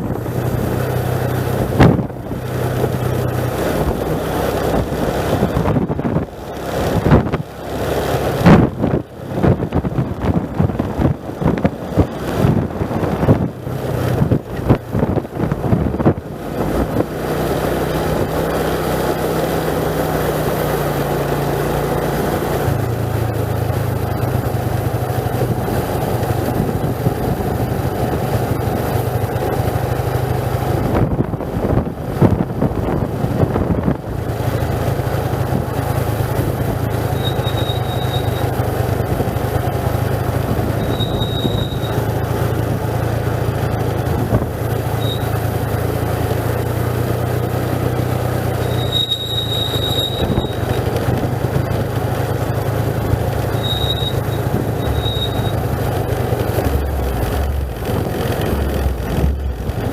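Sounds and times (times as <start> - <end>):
wind buffeting microphone: 0.0 - 7.6, 8.4 - 17.2, 25.2 - 37.0
vehicle engine running: 0.0 - 59.9
brief high squeaks: 37.1 - 38.6, 40.7 - 42.1, 45.0 - 45.4, 48.6 - 50.9, 53.4 - 55.7.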